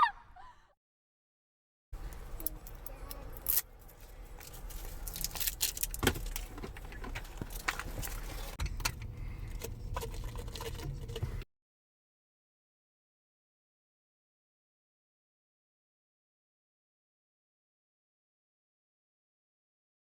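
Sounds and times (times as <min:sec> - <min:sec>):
low steady rumble: 0:02.0 - 0:11.4
small hard objects clicking and rattling: 0:04.4 - 0:07.9.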